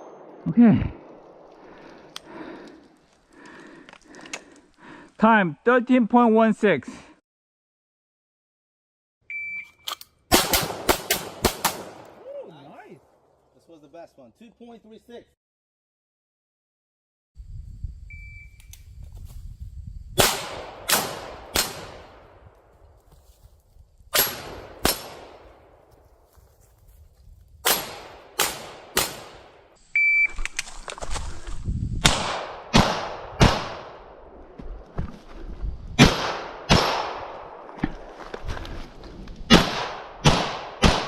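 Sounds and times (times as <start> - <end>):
shot timer beep: 9.3 - 9.9, 30.0 - 30.4
pistol shots: 10.3 - 12.1, 20.2 - 22.2, 24.2 - 25.4, 27.6 - 29.6, 32.0 - 34.0, 36.0 - 37.5, 39.5 - 41.0.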